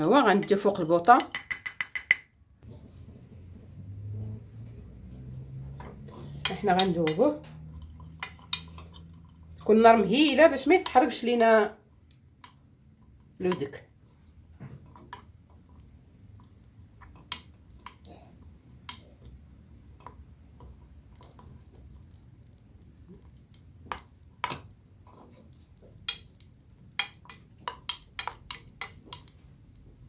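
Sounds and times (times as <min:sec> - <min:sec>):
metal utensil clinking in a pot: 0:00.0 - 0:02.4, 0:05.8 - 0:11.3.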